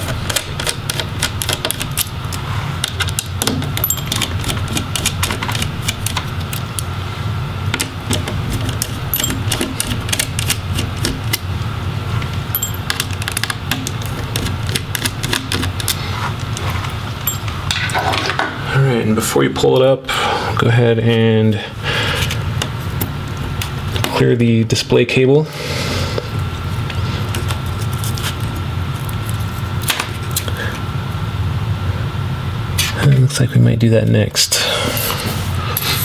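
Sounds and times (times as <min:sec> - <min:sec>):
steady low hum: 0:00.0 - 0:36.0.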